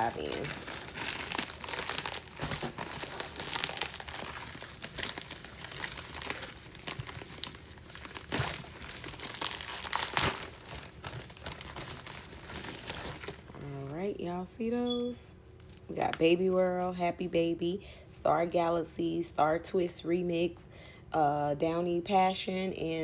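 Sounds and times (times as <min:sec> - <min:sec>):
packaging crinkling and rustling: 0:00.0 - 0:13.9.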